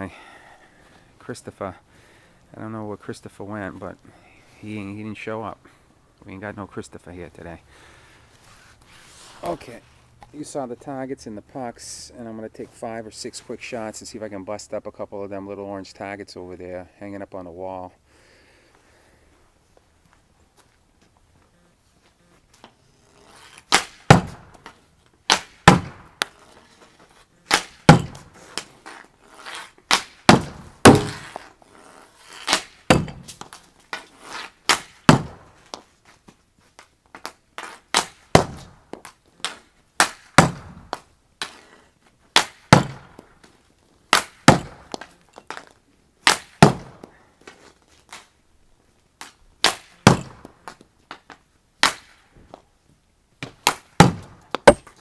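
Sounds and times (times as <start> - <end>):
puck hitting wall and targets: 23.7 - 26.4, 27.5 - 29.0, 29.8 - 31.5, 32.5 - 35.9, 37.1 - 41.6, 42.3 - 43.5, 44.1 - 48.3, 49.2 - 52.6, 53.4 - 55.0
hockey stick striking puck: 27.5 - 31.5.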